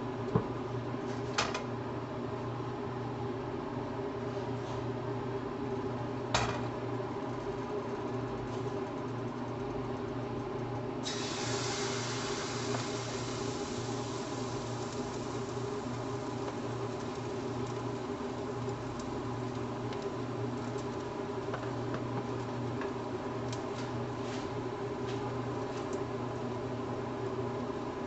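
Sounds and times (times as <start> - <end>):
steady mechanical hum: 0.0 - 28.0
pancakes crackling in pan: 11.2 - 26.0.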